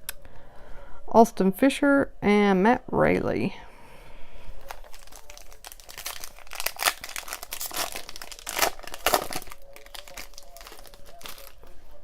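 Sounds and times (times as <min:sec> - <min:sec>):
plastic packaging crinkling: 0:04.6 - 0:11.7.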